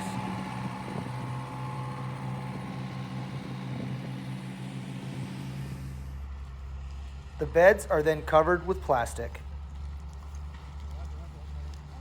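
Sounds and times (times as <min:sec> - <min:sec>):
engine humming steadily: 0:00.0 - 0:12.0.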